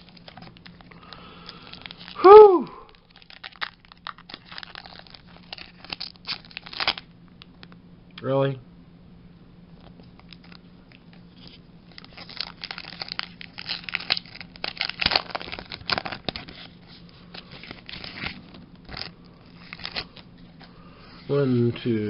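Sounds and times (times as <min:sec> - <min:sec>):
foil wrapper crinkling and tearing: 0:00.0 - 0:07.1, 0:09.8 - 0:20.3
faint low hum: 0:00.0 - 0:22.0.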